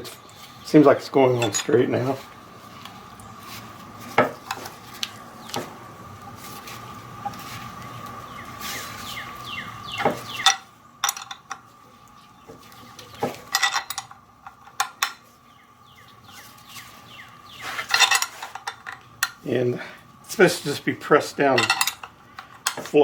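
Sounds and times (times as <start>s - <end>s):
metal clinks and scrapes of wrench: 1.4s - 1.9s, 13.5s - 14.2s, 17.8s - 19.4s, 21.6s - 22.9s.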